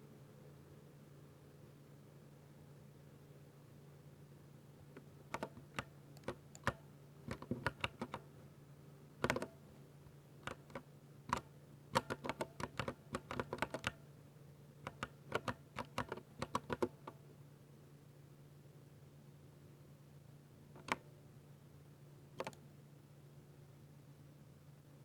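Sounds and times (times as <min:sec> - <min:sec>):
mechanical keyboard typing: 0:05.3 - 0:08.2, 0:09.2 - 0:09.6, 0:10.4 - 0:14.0, 0:14.8 - 0:17.2, 0:20.8 - 0:21.0, 0:22.4 - 0:22.6.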